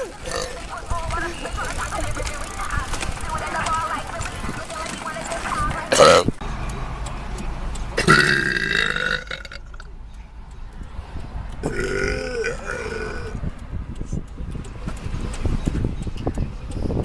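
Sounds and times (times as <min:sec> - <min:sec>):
woman burping: 0:05.9 - 0:06.3, 0:08.0 - 0:09.7, 0:11.6 - 0:13.4.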